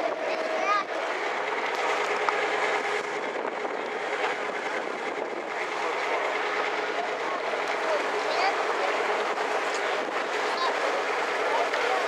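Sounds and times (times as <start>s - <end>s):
boat engine running: 0.0s - 12.0s
rushing water: 0.0s - 12.0s
wind noise: 2.7s - 5.7s.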